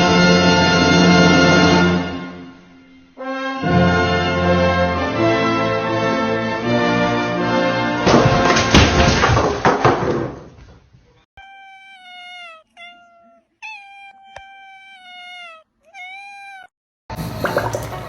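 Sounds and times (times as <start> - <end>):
cat meowing: 11.4 - 16.7.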